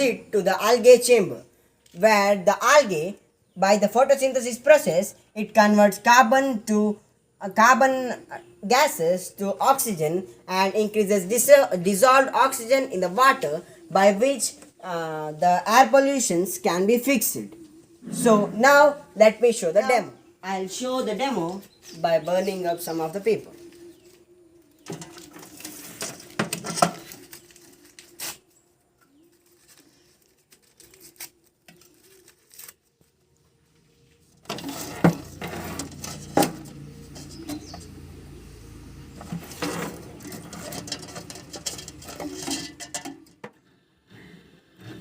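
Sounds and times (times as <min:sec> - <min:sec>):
paper rustling: 0:25.1 - 0:36.6.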